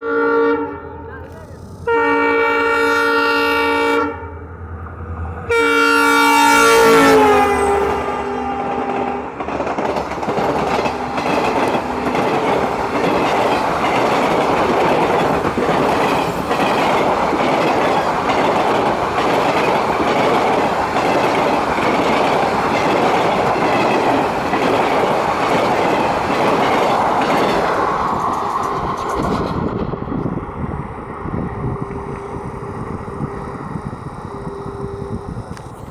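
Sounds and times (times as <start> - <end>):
locomotive horn long blasts: 0.0 - 9.4, 10.6 - 25.0, 30.1 - 35.9
train wheels clattering over rail joints: 8.7 - 30.4.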